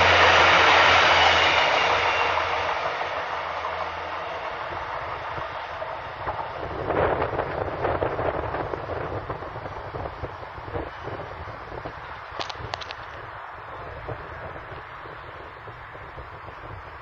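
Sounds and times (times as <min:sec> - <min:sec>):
train wagons rumbling and rattling: 0:00.0 - 0:17.0
wind buffeting microphone: 0:03.7 - 0:17.0.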